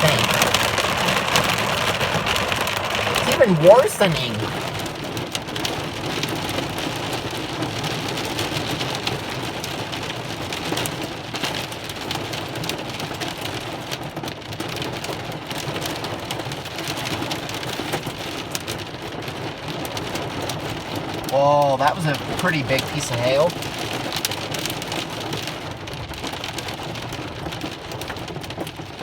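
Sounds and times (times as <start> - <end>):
heavy rain roar: 0.0 - 6.0, 21.3 - 23.8
hailstones ticking: 0.0 - 29.0.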